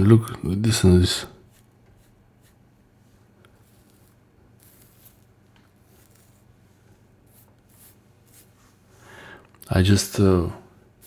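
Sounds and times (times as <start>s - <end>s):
fingers scratching skin: 1.4s - 2.8s, 3.4s - 6.5s, 7.3s - 8.6s.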